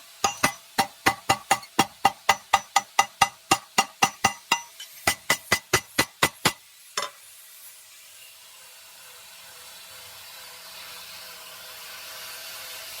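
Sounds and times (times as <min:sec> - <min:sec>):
steady hiss: 0:00.0 - 0:08.3
hammer ringing on anvil: 0:00.2 - 0:06.6.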